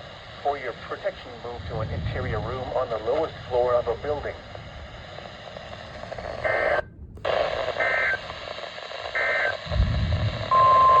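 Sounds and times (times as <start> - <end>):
radio hiss: 0.0 - 11.0
warbling digital data tones: 6.5 - 6.8, 7.7 - 8.3, 9.1 - 9.6
steady single tone: 9.2 - 9.6, 10.5 - 11.0.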